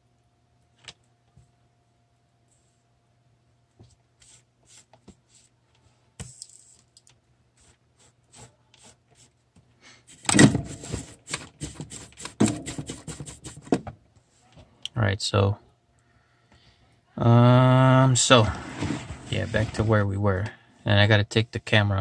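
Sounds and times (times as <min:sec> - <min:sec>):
rapid rubbing and scraping: 0:18.4 - 0:20.2.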